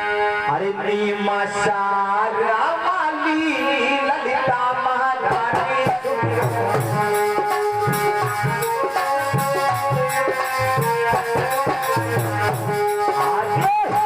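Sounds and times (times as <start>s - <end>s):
hand drum beat: 5.6s - 14.0s
held melody notes: 6.4s - 14.0s.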